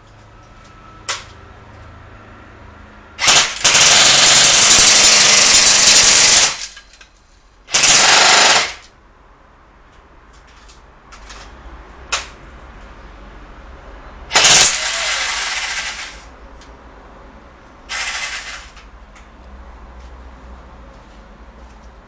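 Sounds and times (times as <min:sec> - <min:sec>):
airsoft gun firing: 0:03.2 - 0:06.6, 0:07.7 - 0:08.8, 0:14.3 - 0:16.2.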